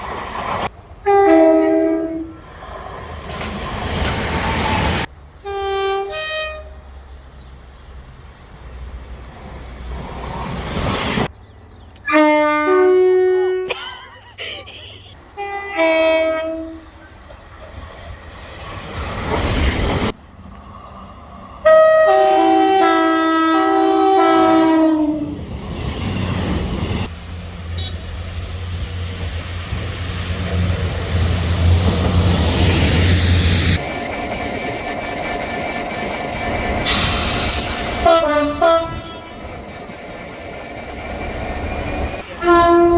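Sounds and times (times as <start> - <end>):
train passing with low rumble: 0.0 - 42.9
train running noise: 0.0 - 42.9
train horn blasts: 1.0 - 2.4, 5.4 - 6.9, 12.0 - 13.7, 15.4 - 17.1, 21.6 - 25.4, 36.9 - 39.4, 42.2 - 42.9.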